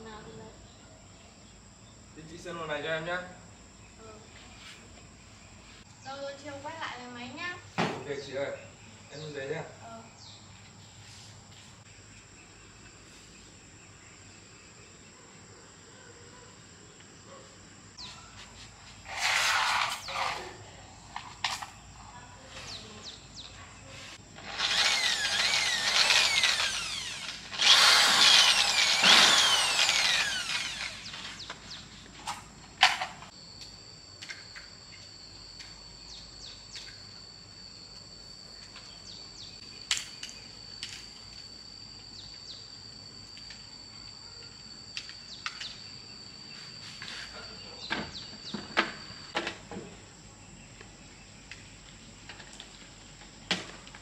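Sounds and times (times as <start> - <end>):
electric drill running: 19.0 - 20.4, 24.4 - 31.5.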